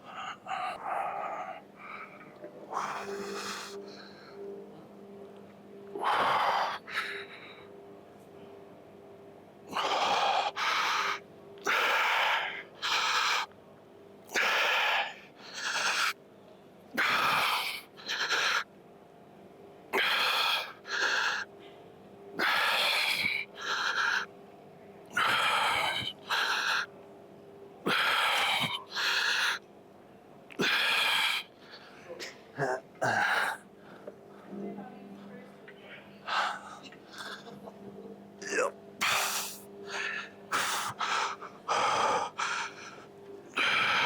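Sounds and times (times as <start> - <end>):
person breathing hard: 0.0 - 4.5, 6.0 - 7.8, 9.7 - 13.5, 14.3 - 16.2, 17.0 - 18.7, 20.0 - 21.8, 22.4 - 24.3, 25.1 - 26.9, 27.9 - 29.6, 30.6 - 32.3, 39.0 - 44.0
faint steady hum: 0.0 - 44.0.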